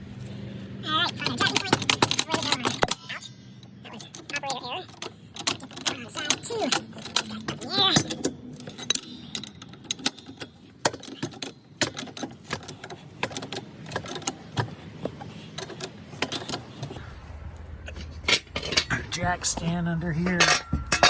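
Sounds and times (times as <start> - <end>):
metallic clicks of car jack: 1.1 - 17.0, 20.3 - 21.0.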